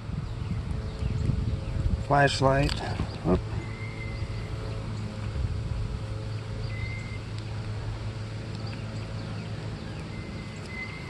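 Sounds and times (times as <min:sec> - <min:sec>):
steady low hum: 0:00.0 - 0:11.0
faint high chirp: 0:03.6 - 0:04.8, 0:06.6 - 0:07.3, 0:08.6 - 0:11.0.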